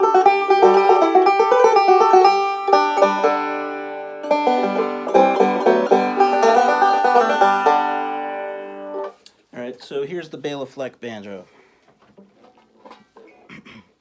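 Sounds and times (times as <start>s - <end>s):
banjo picked in fast rolls: 0.0s - 9.2s.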